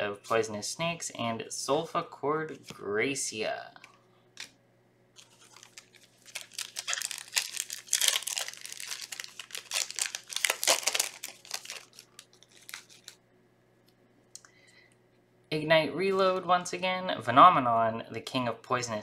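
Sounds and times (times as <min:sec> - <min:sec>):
foil pack crinkling and tearing: 0:05.2 - 0:13.2.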